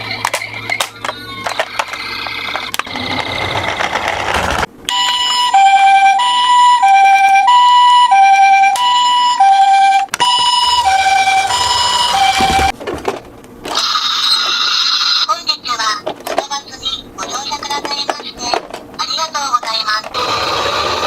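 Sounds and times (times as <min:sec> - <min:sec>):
toy ambulance two-tone siren: 0:04.9 - 0:12.7.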